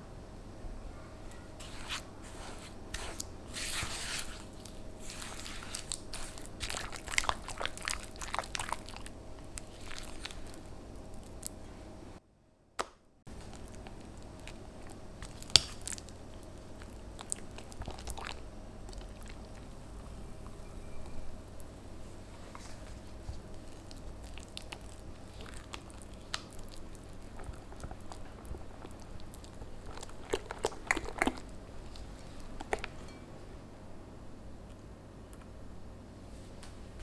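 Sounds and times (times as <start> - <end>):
cookies being crushed by hand: 3.0 - 11.6, 12.8 - 19.7, 23.0 - 33.0.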